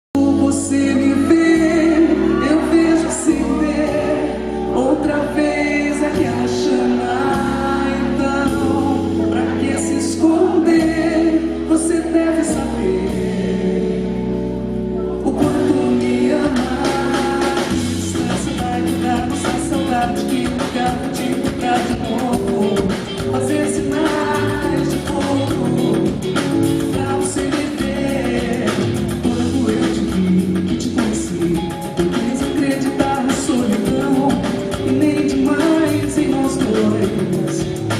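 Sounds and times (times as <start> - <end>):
person singing with live band: 0.2 - 37.9
bright rhythmic percussion: 15.4 - 37.9.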